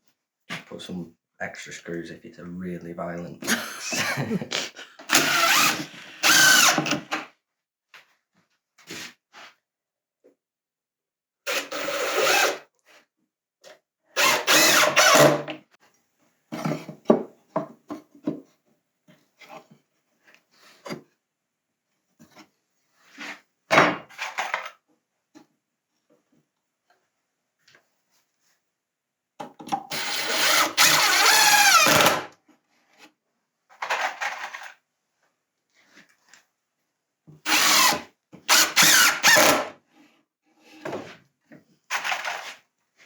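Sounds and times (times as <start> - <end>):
power drill driving screws into wood: 5.0 - 7.3, 11.5 - 12.6, 14.2 - 15.6, 29.9 - 32.3, 37.4 - 39.7, 41.9 - 42.6.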